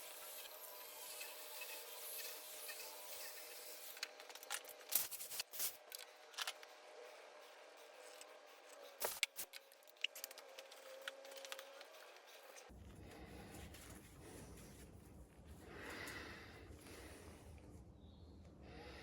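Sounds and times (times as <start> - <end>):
metal parts and tools clicking: 2.6 - 6.6.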